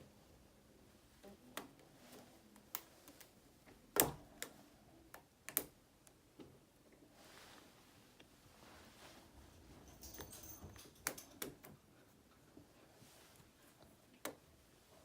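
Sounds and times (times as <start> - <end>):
light clicks and taps: 9.8 - 12.6.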